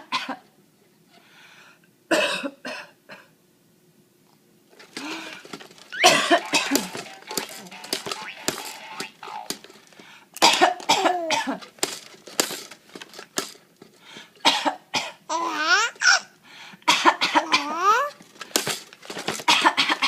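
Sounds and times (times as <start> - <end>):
person coughing: 2.1 - 3.3, 6.0 - 6.9.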